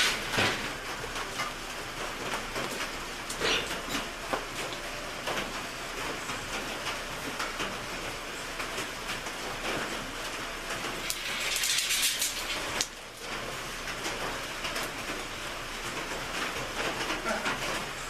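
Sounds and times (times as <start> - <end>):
rain drumming on a metal roof: 0.0 - 18.0.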